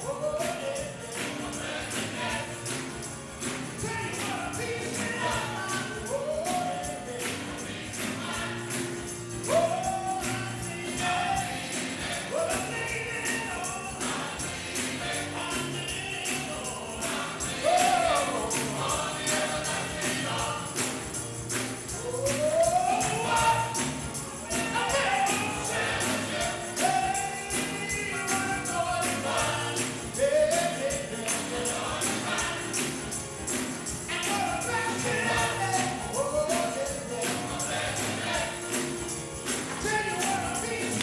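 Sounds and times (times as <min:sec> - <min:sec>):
gospel choir singing: 0:00.0 - 0:41.0
tambourine beat: 0:00.0 - 0:41.0.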